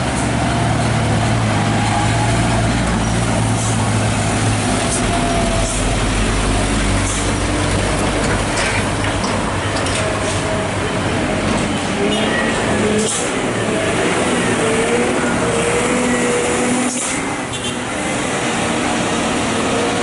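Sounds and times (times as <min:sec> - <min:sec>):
road noise: 0:00.0 - 0:20.0
truck engine droning: 0:00.0 - 0:20.0.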